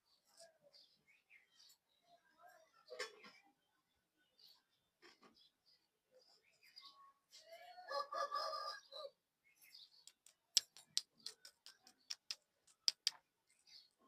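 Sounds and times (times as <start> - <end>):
sharp clicks and taps: 10.0 - 13.2.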